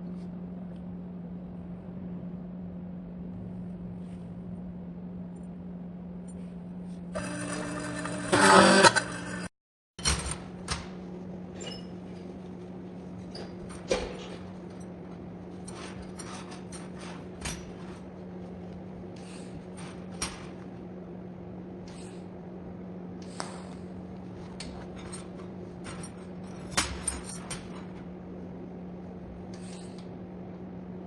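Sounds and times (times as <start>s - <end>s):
steady low hum: 0.0s - 31.0s
loud noisy tonal sound: 7.2s - 9.5s.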